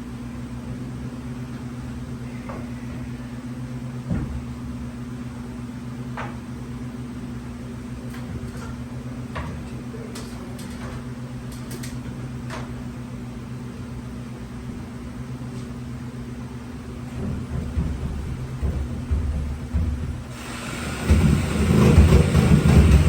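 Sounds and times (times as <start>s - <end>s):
machine humming: 16.0s - 23.0s.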